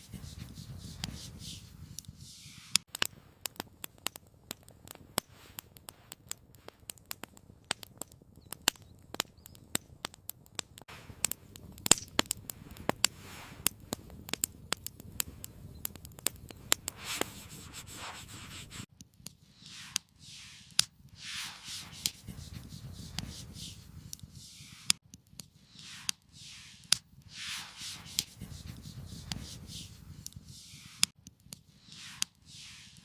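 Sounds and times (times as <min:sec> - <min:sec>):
wood fire crackling and popping: 0:00.0 - 0:33.0
low rush of flame: 0:10.8 - 0:18.9, 0:19.5 - 0:25.0, 0:25.6 - 0:31.1, 0:31.7 - 0:33.0.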